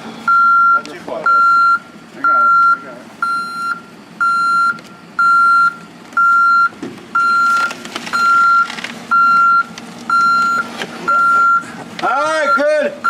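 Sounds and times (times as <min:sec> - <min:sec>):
truck reversing alarm beeping: 0:00.0 - 0:13.0.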